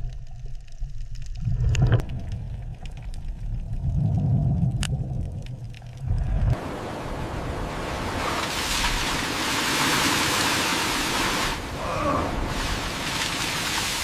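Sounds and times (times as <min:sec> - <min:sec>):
low rumble: 0:00.0 - 0:07.8
ocean water rushing: 0:06.1 - 0:14.0.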